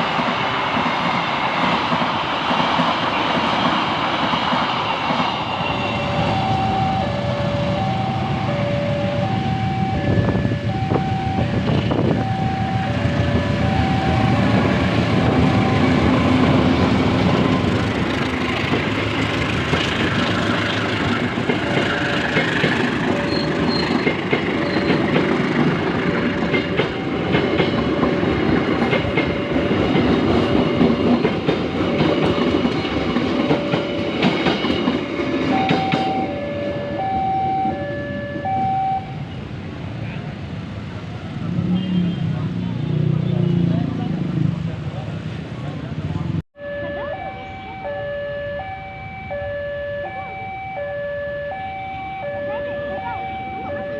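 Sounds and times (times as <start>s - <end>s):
train rumble and wheel clatter: 0.0s - 46.4s
two-tone electronic warning signal: 5.6s - 17.8s, 21.5s - 25.2s, 35.4s - 39.4s, 46.6s - 53.9s.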